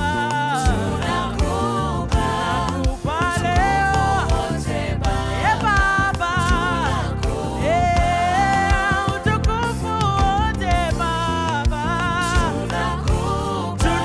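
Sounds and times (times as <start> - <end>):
band with drums and bass: 0.0 - 14.0
voices singing gospel: 0.0 - 14.0.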